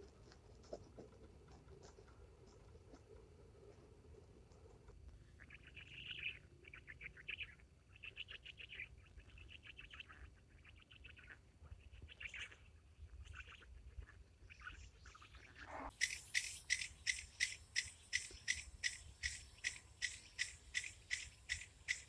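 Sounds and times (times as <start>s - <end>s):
small animal squeaks and chirps: 5.4s - 22.0s
pulsed animal chirping: 12.1s - 22.0s.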